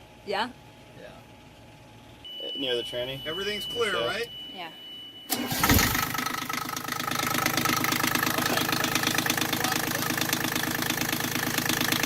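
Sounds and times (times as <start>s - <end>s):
diesel engine idling: 5.3s - 12.0s.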